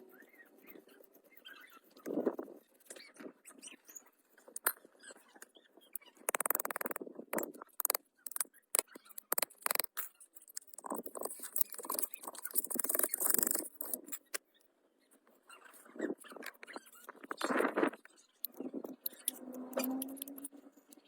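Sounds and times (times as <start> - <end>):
rapid clicks and knocks: 6.2 - 14.2.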